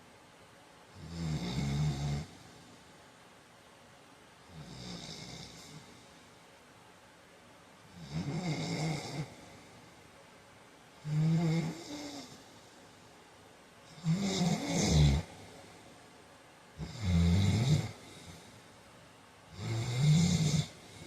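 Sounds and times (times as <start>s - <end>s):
man snoring: 1.0s - 2.4s, 4.5s - 5.9s, 7.9s - 9.6s, 11.0s - 12.5s, 13.9s - 15.5s, 16.8s - 18.6s, 19.5s - 21.0s.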